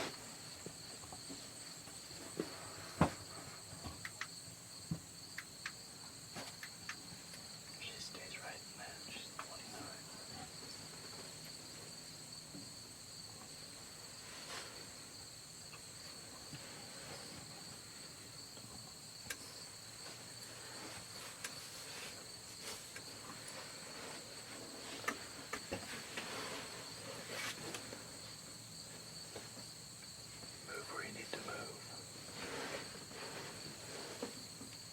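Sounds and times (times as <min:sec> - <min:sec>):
crickets chirping: 0:00.0 - 0:34.9
faint clicks and rustles: 0:18.6 - 0:31.5.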